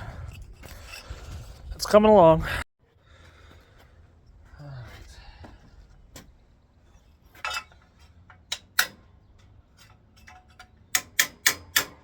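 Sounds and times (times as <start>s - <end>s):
sharp clicks of sheet steel: 7.4s - 12.0s.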